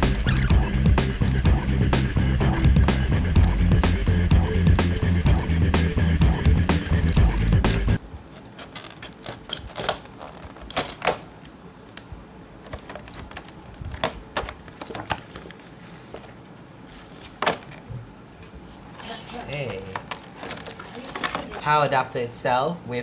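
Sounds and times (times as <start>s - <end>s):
background music: 0.0s - 8.0s.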